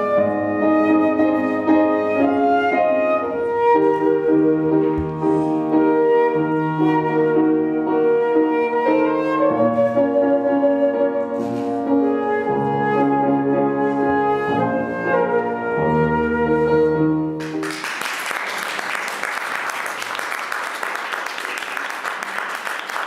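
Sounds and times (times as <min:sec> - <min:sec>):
woodwind melody with chords: 0:00.0 - 0:17.4.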